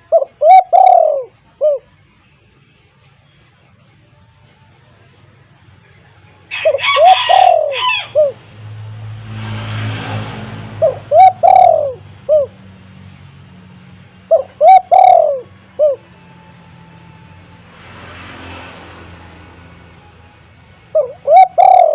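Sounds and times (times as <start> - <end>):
dove cooing: 0.0 - 1.9, 6.5 - 8.4, 10.6 - 12.6, 14.3 - 16.1, 20.9 - 21.9.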